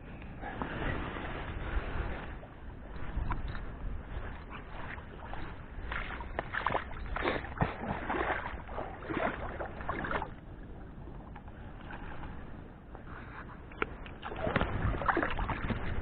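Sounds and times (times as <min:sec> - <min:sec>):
water splashing and sloshing: 0:00.0 - 0:16.0
wind rumble on microphone: 0:00.0 - 0:16.0.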